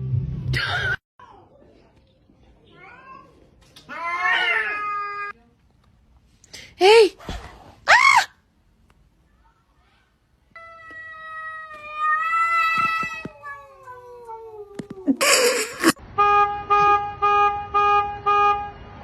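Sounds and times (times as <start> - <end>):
cat yowling: 3.9 - 5.3, 10.6 - 15.2.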